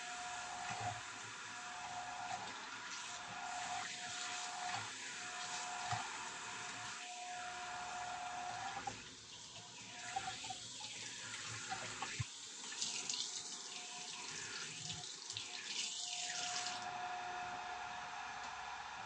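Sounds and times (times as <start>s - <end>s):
tap water running into sink: 8.5s - 16.8s.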